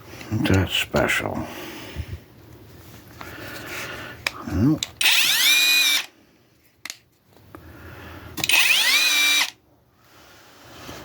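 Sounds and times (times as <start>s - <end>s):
impact driver motor whine: 5.0s - 6.1s, 8.4s - 9.6s.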